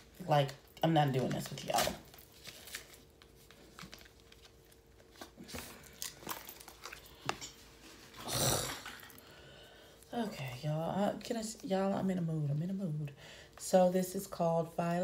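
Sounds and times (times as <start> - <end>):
cardboard packaging tearing: 1.4 - 4.9.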